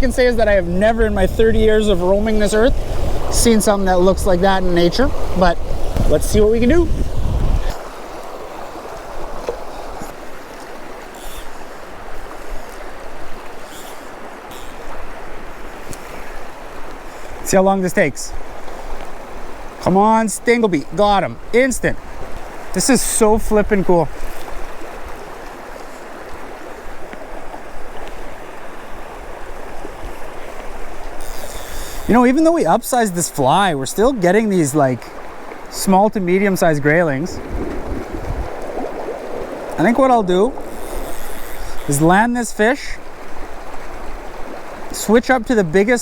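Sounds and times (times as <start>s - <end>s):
faint ticks: 9.0s - 15.0s, 15.8s - 17.4s, 30.6s - 32.1s, 40.6s - 42.0s.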